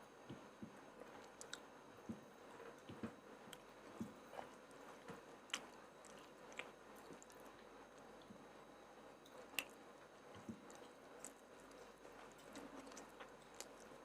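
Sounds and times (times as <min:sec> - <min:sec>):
person chewing: 0:01.2 - 0:01.6, 0:03.5 - 0:08.3, 0:10.4 - 0:14.0.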